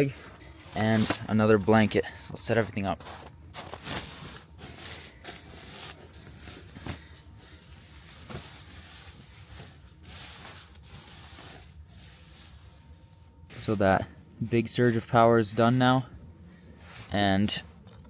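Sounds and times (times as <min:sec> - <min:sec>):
faint low hum: 0:00.0 - 0:18.0
fabric rustling: 0:02.6 - 0:14.0.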